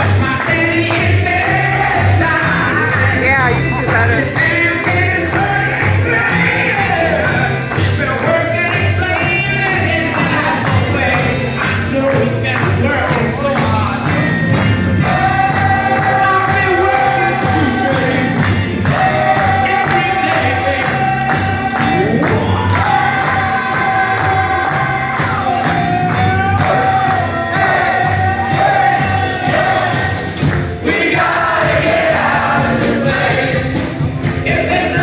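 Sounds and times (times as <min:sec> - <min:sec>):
loud dance music: 0:00.0 - 0:35.0.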